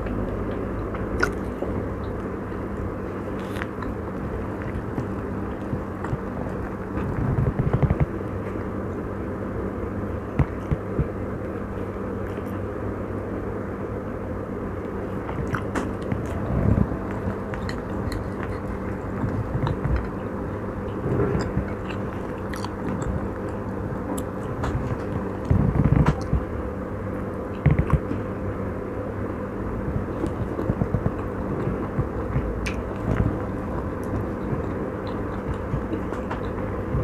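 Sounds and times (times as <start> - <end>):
chewing and biting food: 0.0 - 8.7, 14.8 - 26.5, 27.4 - 28.3, 29.8 - 37.0
low hum: 0.0 - 37.0.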